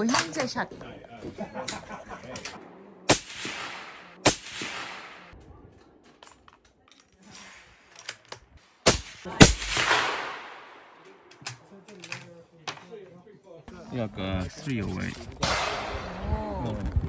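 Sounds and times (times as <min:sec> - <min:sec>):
rifle shots with echo: 0:02.6 - 0:06.0, 0:08.6 - 0:11.3, 0:15.4 - 0:16.2.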